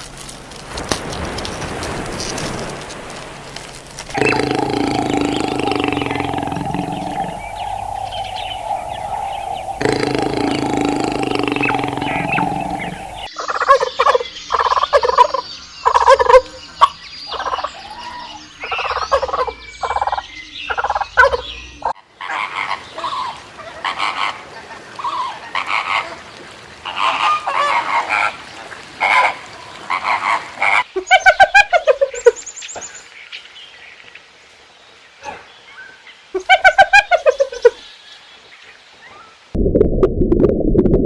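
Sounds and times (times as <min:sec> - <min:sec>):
farm birds calling: 0:04.1 - 0:21.9.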